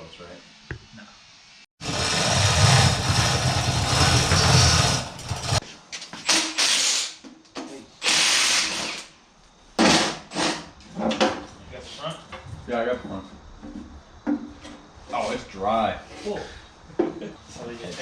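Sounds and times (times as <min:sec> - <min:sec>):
power tool humming: 0:01.8 - 0:05.6
hissing bursts: 0:08.0 - 0:09.1.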